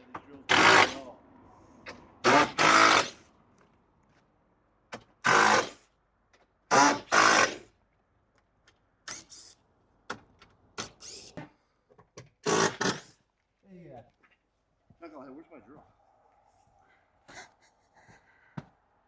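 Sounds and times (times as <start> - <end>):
cordless drill bursts: 0.5 - 1.1, 2.2 - 3.2, 5.2 - 5.8, 6.7 - 7.7, 9.1 - 9.5, 12.4 - 13.2.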